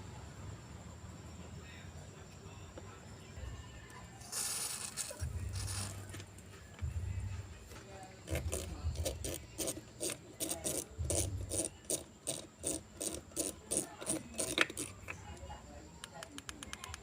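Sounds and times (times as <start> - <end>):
hand scraping back and forth: 4.2 - 6.5, 7.6 - 15.3.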